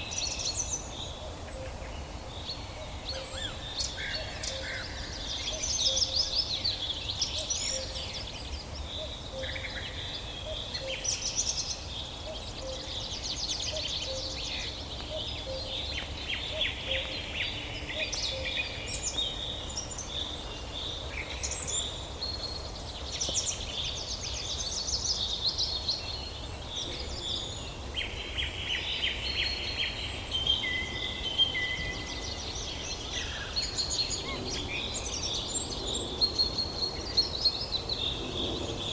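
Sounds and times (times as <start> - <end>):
birds singing and chirping: 0.0 - 38.9.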